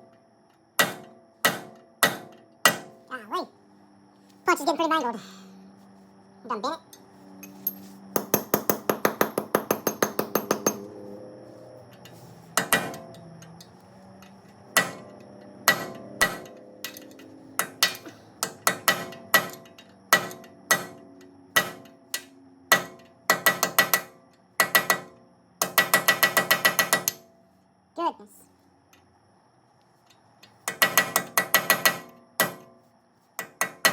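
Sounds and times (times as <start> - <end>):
hammer striking metal punch: 0.8 - 3.0, 8.2 - 10.9, 12.6 - 13.2, 14.8 - 27.3, 30.7 - 32.7, 33.4 - 33.9.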